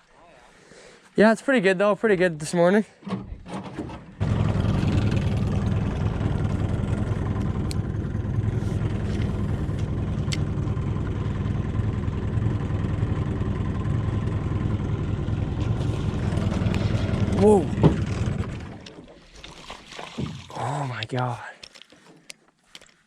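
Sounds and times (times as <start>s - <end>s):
boat motor droning: 4.2s - 19.2s.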